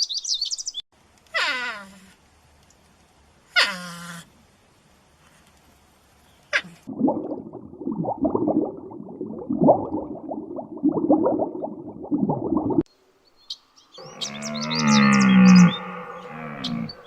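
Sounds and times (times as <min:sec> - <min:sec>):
small birds chirping: 0:00.0 - 0:00.9, 0:13.2 - 0:17.0
low-pitched animal call: 0:14.0 - 0:17.0
muffled short animal sounds: 0:14.0 - 0:17.0.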